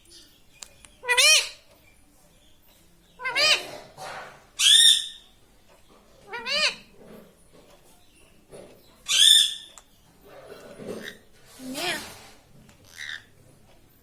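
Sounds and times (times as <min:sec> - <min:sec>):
parakeet calling: 0:00.0 - 0:01.7, 0:03.1 - 0:04.0, 0:04.6 - 0:05.3, 0:06.2 - 0:07.0, 0:09.0 - 0:09.8, 0:10.9 - 0:13.4.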